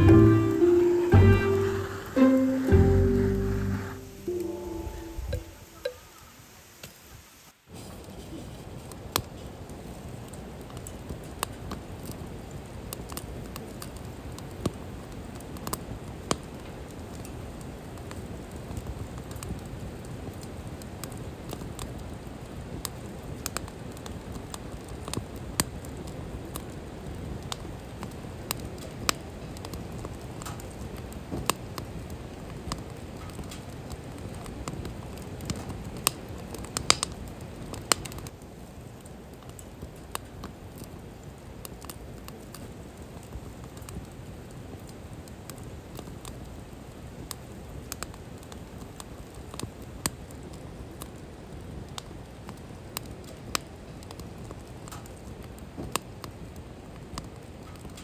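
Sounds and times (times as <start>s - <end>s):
low steady rush: 0.0s - 7.3s
wood fire crackling and popping: 8.7s - 58.0s.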